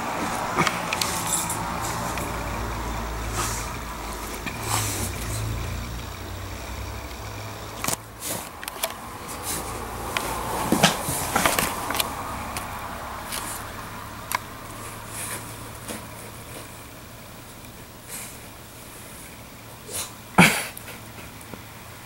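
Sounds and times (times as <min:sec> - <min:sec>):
dog snorting and sneezing: 0:00.2 - 0:02.4, 0:03.3 - 0:03.8, 0:19.8 - 0:21.3
dog scraping and rustling on floor: 0:03.3 - 0:03.8.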